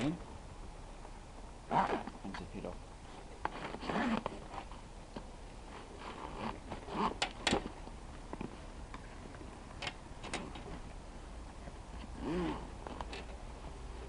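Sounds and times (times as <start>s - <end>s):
rustling and zipping bag: 1.7s - 2.2s, 3.0s - 4.8s, 5.7s - 7.8s, 11.9s - 14.0s.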